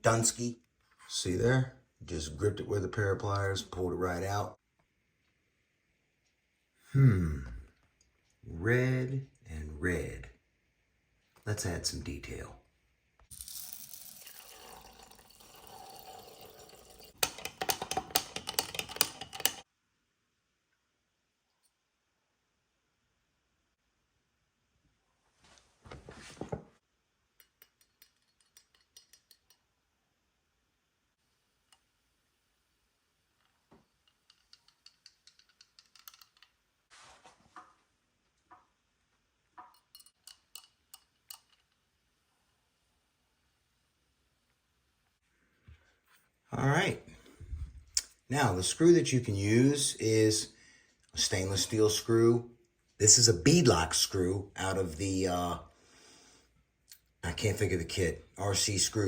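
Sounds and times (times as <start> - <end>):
small hard objects clicking and rattling: 13.3 - 14.4, 17.1 - 19.6, 27.4 - 29.6, 33.9 - 36.6
soft rustling: 36.8 - 37.9.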